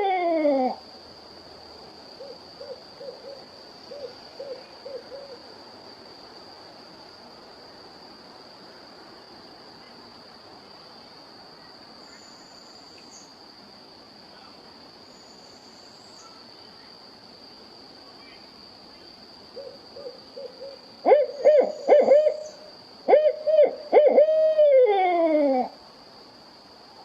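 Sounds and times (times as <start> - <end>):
insects droning: 0.0 - 27.0
owl hooting: 2.2 - 5.4, 19.6 - 25.7.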